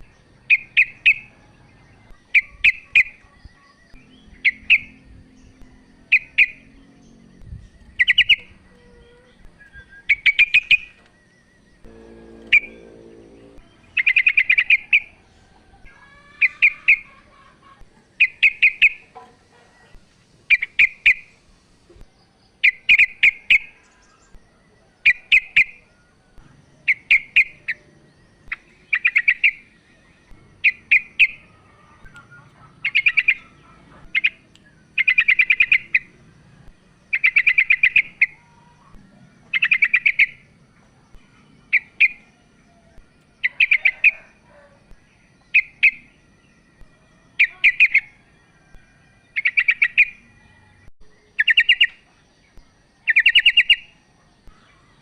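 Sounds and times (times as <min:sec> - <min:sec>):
bulbul chattering call: 0:11.9 - 0:15.2, 0:30.6 - 0:36.2.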